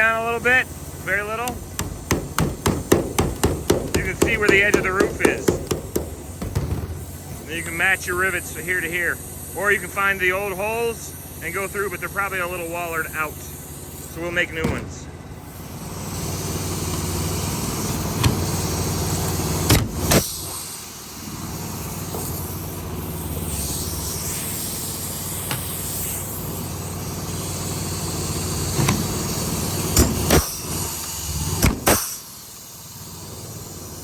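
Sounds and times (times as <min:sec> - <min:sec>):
motor humming: 0:00.0 - 0:31.9
sharp clicks and knocks: 0:01.4 - 0:07.0.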